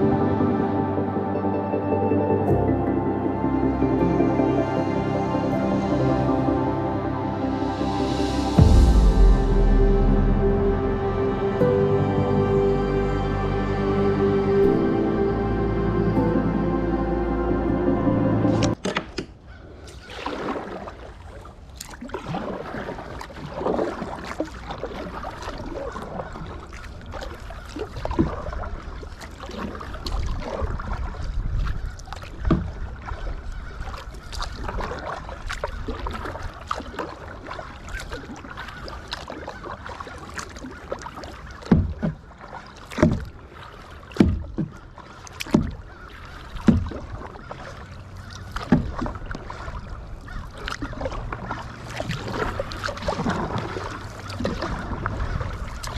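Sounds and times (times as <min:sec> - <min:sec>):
water splashing and dripping: 0:03.7 - 0:55.9
paddle strokes in water: 0:04.2 - 0:55.9
wind rumble on microphone: 0:29.9 - 0:36.6.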